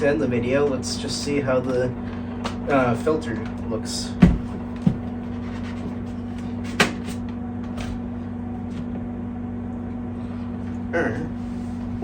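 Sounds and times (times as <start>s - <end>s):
steady low hum: 0.0s - 12.0s
plastic knocks: 4.2s - 5.2s.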